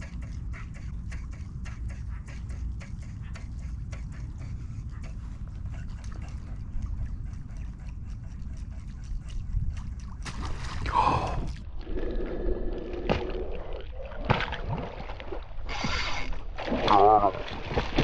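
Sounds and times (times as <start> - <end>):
water splashing against kayak: 9.5 - 11.6, 14.2 - 18.0
loud splash: 10.2 - 11.4.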